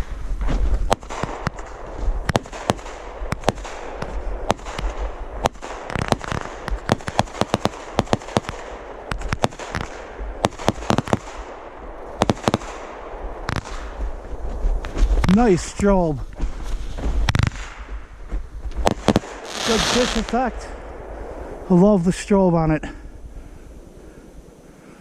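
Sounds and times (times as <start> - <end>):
continuous fireworks hiss: 0.0 - 25.0
fireworks reports: 12.1 - 18.1, 18.7 - 23.2.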